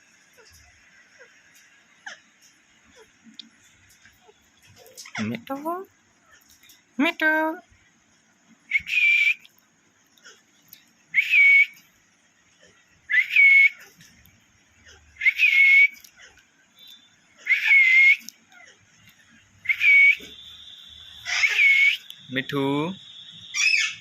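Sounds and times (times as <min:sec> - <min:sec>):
parrot whistling: 0:08.7 - 0:09.5, 0:11.1 - 0:11.8, 0:13.1 - 0:13.9, 0:14.9 - 0:16.2, 0:16.8 - 0:18.6, 0:19.6 - 0:24.0.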